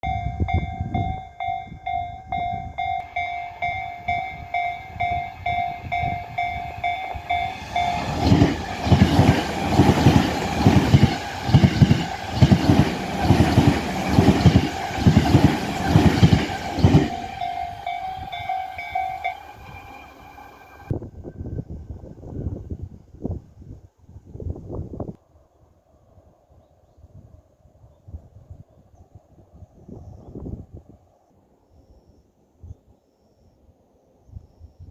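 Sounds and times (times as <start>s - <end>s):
level crossing electronic bell: 0.1s - 8.2s, 17.0s - 20.9s
train wheels clattering over rail joints: 6.5s - 18.0s.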